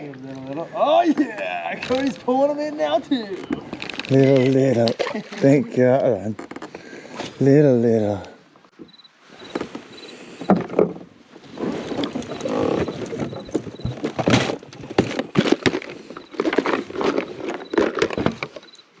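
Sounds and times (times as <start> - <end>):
rustling: 0.0 - 19.0
close knocks and clatter: 8.7 - 18.8.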